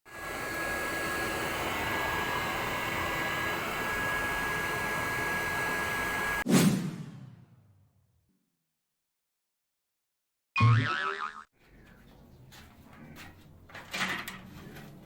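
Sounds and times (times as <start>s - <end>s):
electric blower whining: 0.1s - 6.4s.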